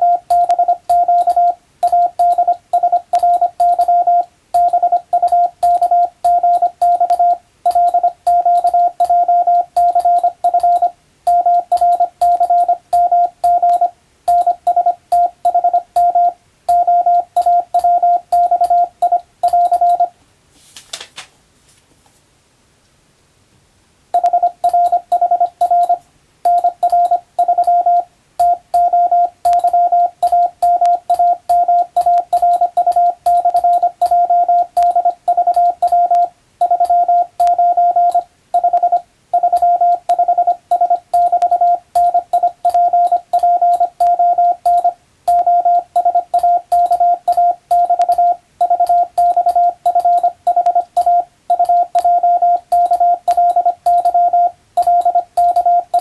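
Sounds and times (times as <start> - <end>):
morse code beeps: 0.0 - 20.2, 24.2 - 56.0
faint clicks: 28.4 - 34.2, 34.8 - 56.0.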